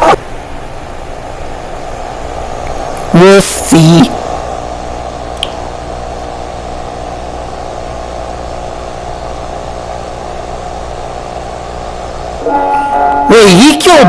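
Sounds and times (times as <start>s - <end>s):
noise haze: 0.0s - 14.0s
low droning hum: 4.1s - 13.6s
small click: 5.4s - 5.6s.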